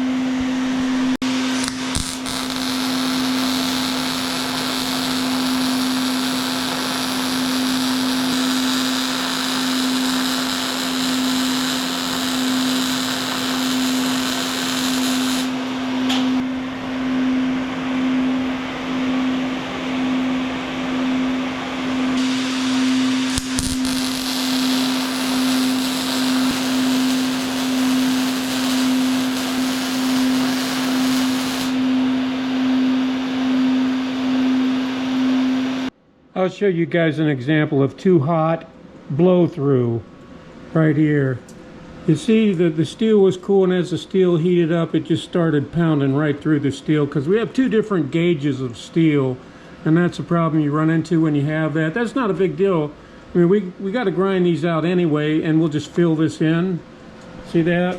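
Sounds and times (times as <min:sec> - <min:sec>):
welding machine hum: 0:01.0 - 0:16.5, 0:22.1 - 0:35.9
welding hiss: 0:01.4 - 0:16.4, 0:22.2 - 0:32.0.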